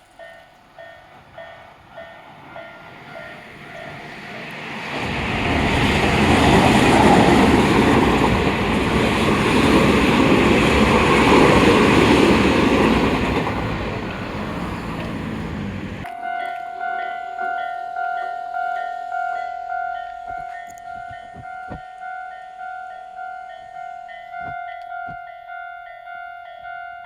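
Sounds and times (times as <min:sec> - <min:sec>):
level crossing warning bell: 0:00.0 - 0:04.4, 0:10.6 - 0:27.0
train rumbling past: 0:00.0 - 0:16.1.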